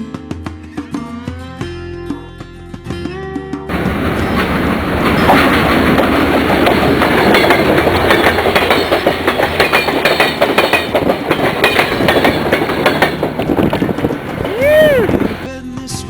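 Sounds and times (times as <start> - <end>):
train rumble: 3.7 - 15.5
train wheels clacking on rails: 3.7 - 15.5.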